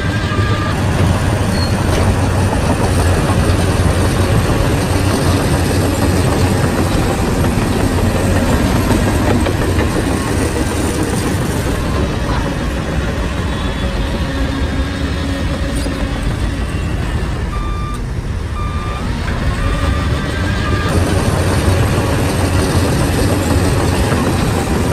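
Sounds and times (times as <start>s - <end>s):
bulldozer diesel engine droning: 0.0s - 24.9s
faint reversing alarm beeps: 16.8s - 20.0s.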